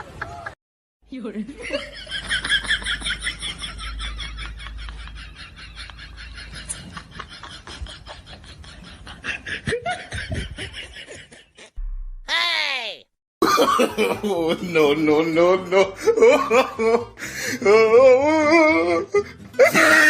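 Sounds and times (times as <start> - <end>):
breathy laughter: 2.0 - 11.8.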